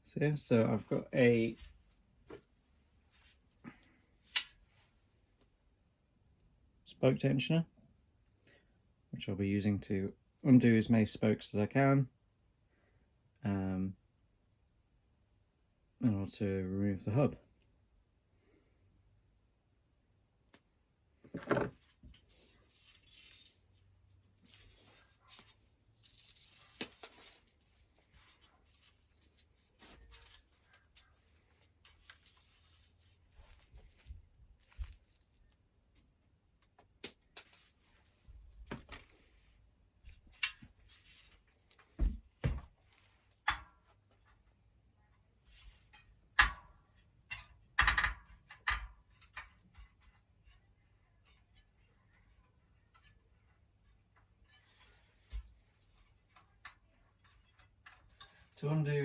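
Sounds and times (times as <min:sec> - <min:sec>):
rustling scrape: 0:21.3 - 0:35.5, 0:40.8 - 0:41.9, 0:49.9 - 0:56.3
metal clicks and taps: 0:46.4 - 0:46.7, 0:47.3 - 0:49.6.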